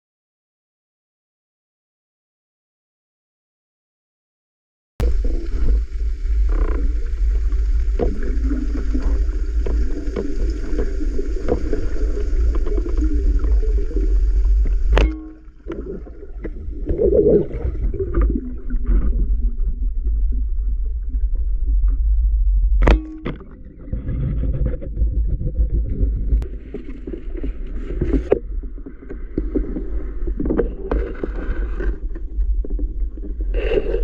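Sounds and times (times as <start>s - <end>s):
underwater clicks and gurgles: 5.0s - 34.0s
underwater rumble: 5.0s - 34.0s.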